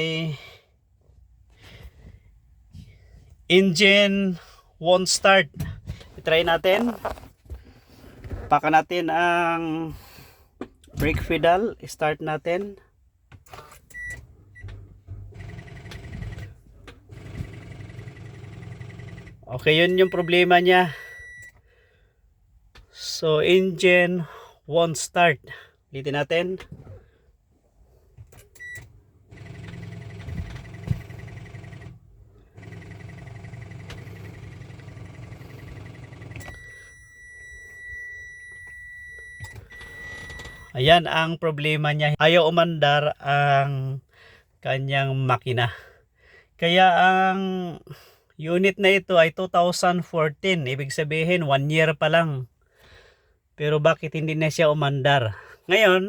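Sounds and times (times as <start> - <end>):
rapid warning beeps: 19.7 - 21.5, 35.8 - 40.8
continuous high beep: 19.7 - 21.6, 36.4 - 40.8.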